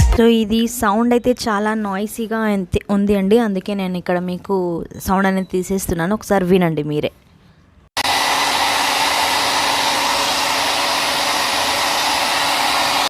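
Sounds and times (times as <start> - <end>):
hair dryer running: 8.0 - 13.0.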